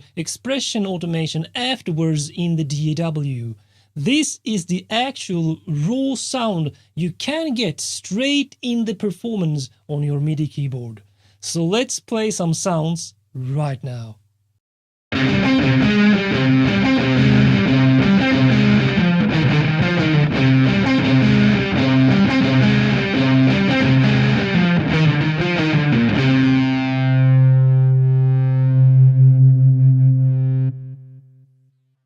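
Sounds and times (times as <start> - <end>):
distorted electric guitar: 15.1 - 31.5.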